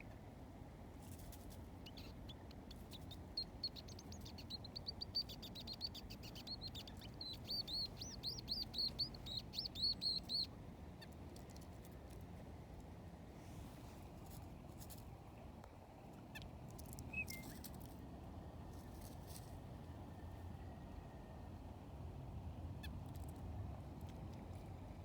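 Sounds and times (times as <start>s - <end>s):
bird chirping: 1.8s - 11.2s, 17.1s - 17.7s.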